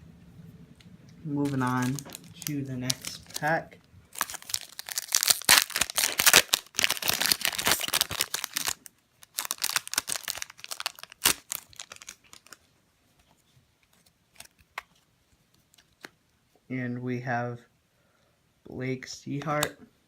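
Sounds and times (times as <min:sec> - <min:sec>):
plastic wrapper tearing and crinkling: 0:01.4 - 0:12.6.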